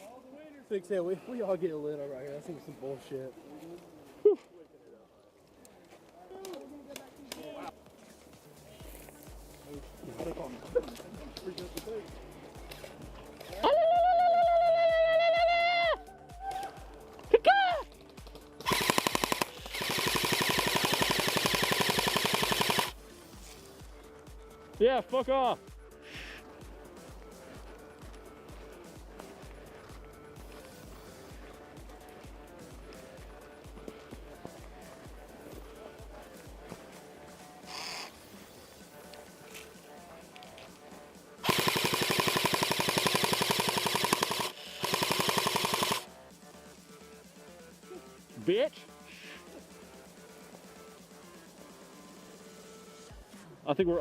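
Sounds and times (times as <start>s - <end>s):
faint background music with beat: 5.8s - 54.0s
rising and falling whoop: 13.6s - 16.7s
airsoft gun firing bursts: 18.6s - 23.0s, 41.4s - 46.1s.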